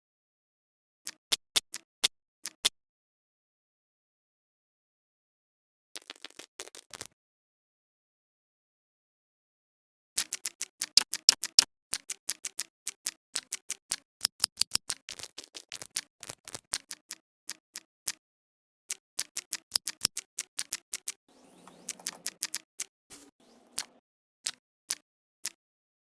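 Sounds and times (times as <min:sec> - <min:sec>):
rapid sharp clicks: 0:10.2 - 0:18.2, 0:19.2 - 0:21.2.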